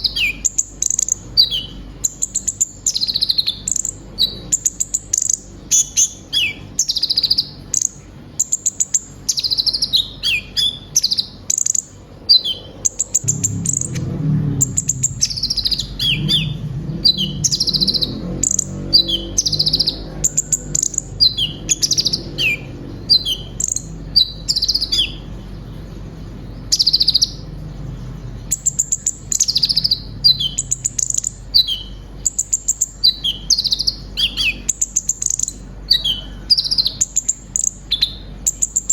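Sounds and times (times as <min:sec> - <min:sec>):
sunbird singing: 0:00.0 - 0:38.9
low hum: 0:12.0 - 0:38.9.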